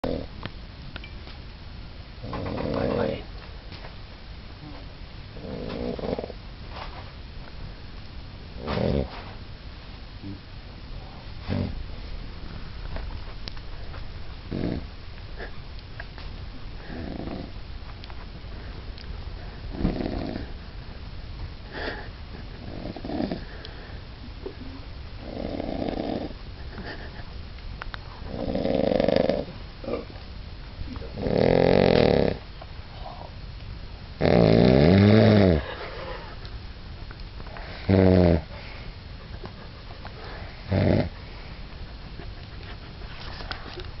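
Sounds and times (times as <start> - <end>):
person snoring: 14.5 - 14.8, 16.8 - 17.5, 19.7 - 20.5, 25.2 - 26.4, 28.3 - 30.0, 31.2 - 32.4, 34.2 - 35.6, 37.7 - 38.5, 40.7 - 41.1
quiet breathing: 16.6 - 17.6, 18.3 - 27.3, 32.2 - 33.5, 37.4 - 44.0.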